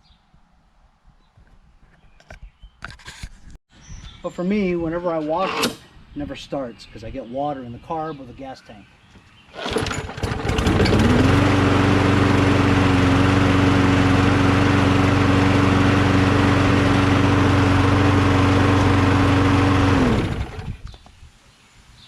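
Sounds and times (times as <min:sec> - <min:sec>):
lawn mower engine running: 0:05.4 - 0:05.8, 0:09.5 - 0:20.8.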